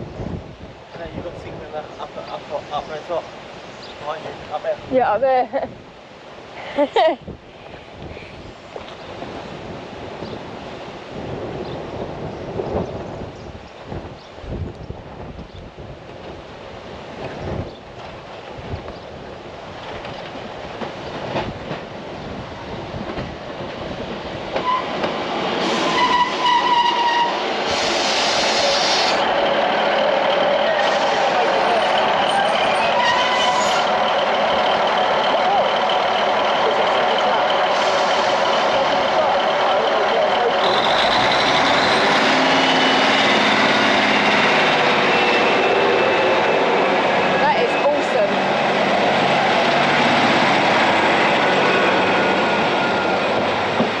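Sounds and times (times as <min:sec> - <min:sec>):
rush of train passing close: 0:07.3 - 0:54.0
train approaching: 0:19.2 - 0:54.0
train horn: 0:25.7 - 0:27.9.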